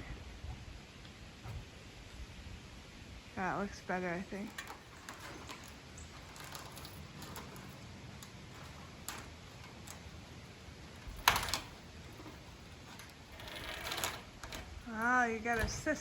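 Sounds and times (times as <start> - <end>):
faint background noise: 0.0 - 16.0
sharp click and clatter: 4.5 - 16.0.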